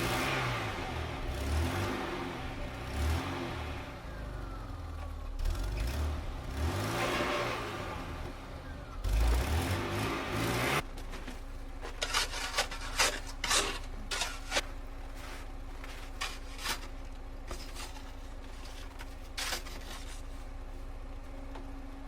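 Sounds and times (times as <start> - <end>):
short irregular scrapes: 11.8 - 20.9.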